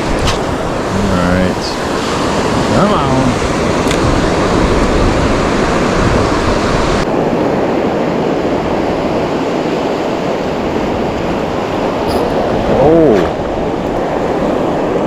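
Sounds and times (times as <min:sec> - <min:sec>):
ocean surf: 0:00.0 - 0:15.0
wind buffeting microphone: 0:00.0 - 0:15.0.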